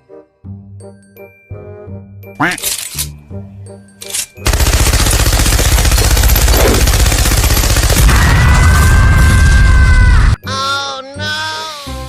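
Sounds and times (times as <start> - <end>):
loud rapid rattle: 4.4 - 8.1.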